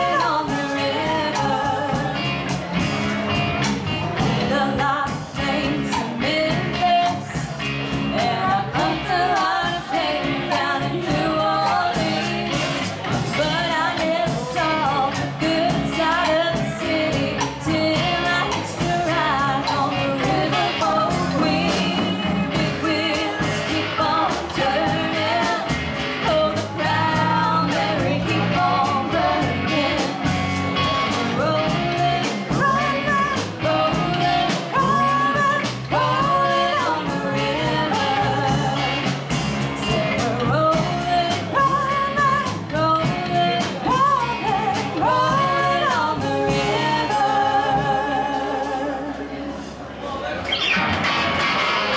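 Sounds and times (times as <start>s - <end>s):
person singing lead vocal: 0.0s - 49.8s
guitar: 0.0s - 51.9s
drum beat: 18.8s - 23.8s.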